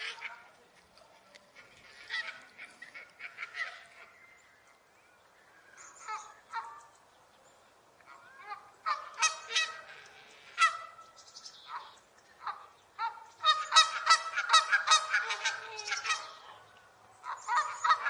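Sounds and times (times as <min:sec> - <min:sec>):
geese honking: 0:00.0 - 0:00.6, 0:01.5 - 0:04.2, 0:08.1 - 0:11.1, 0:11.7 - 0:16.6, 0:17.2 - 0:18.0.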